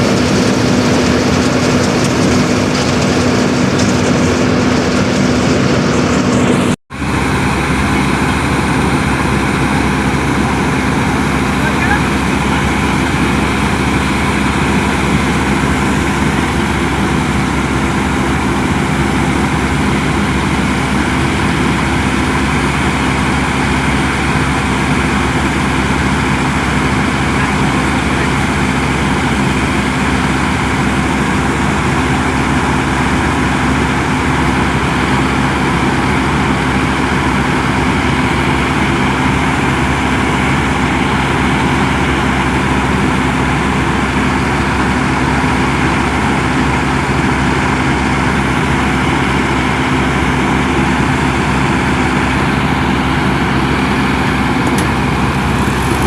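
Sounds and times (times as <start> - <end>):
harvester engine running: 0.0 - 56.0.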